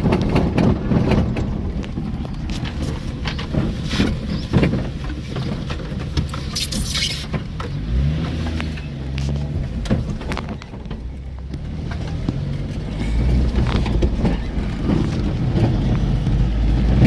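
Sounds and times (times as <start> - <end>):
knocks and rattles from jolts: 0.0 - 7.7, 11.8 - 17.0
vehicle on bumpy dirt road: 0.0 - 17.0.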